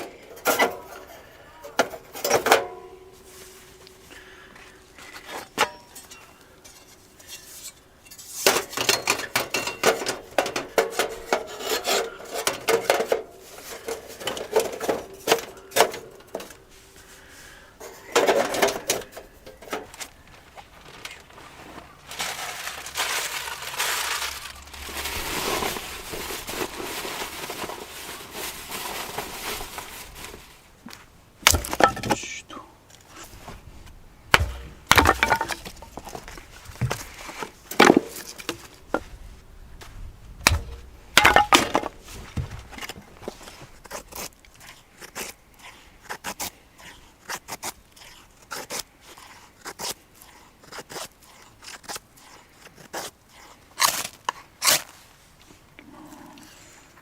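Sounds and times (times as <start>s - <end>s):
soft rustling: 2.8s - 8.5s, 16.3s - 31.8s, 33.0s - 46.0s.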